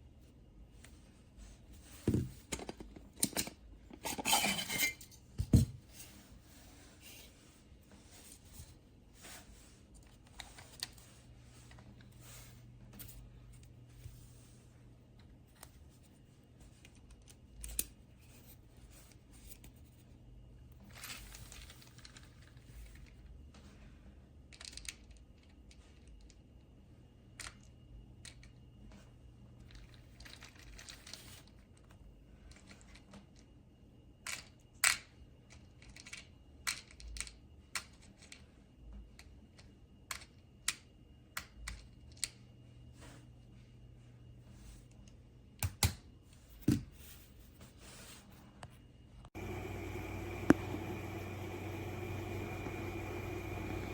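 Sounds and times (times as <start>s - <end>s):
low steady hum: 37.4s - 53.9s.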